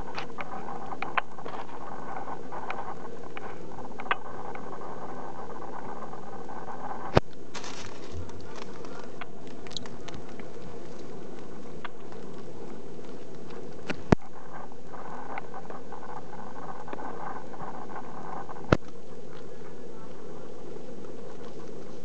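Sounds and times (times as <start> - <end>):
guinea pig pattering and rustling: 0.0 - 22.0
steady hiss: 0.0 - 22.0.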